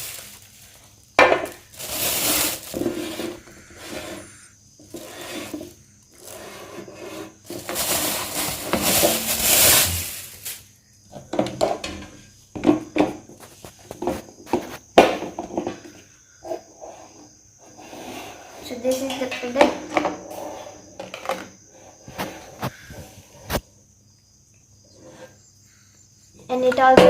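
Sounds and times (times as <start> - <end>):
packaging rubbing and scraping: 0.0 - 10.6.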